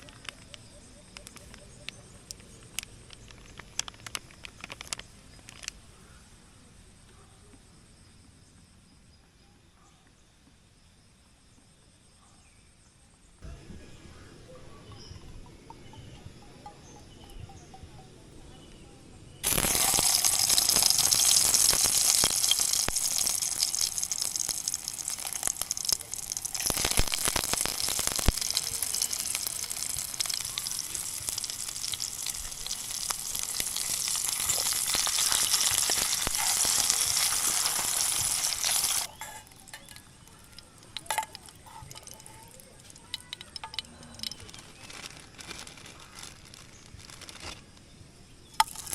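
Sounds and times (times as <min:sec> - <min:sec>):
food sizzling in a hot pan: 0:19.4 - 0:43.8.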